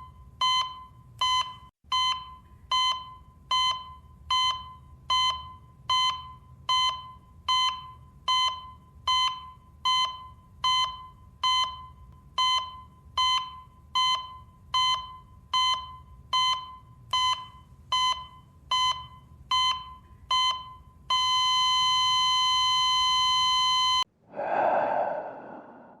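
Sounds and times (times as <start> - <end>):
heart monitor beeping: 0.0 - 24.0
breathy gasp: 24.2 - 26.0.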